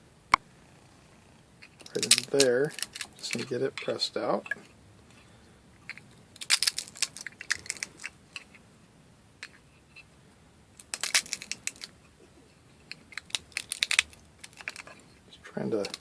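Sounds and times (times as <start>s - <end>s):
plastic cracking and clicking: 1.7s - 3.5s, 5.9s - 8.5s, 10.8s - 11.9s, 12.9s - 15.0s, 15.7s - 16.0s.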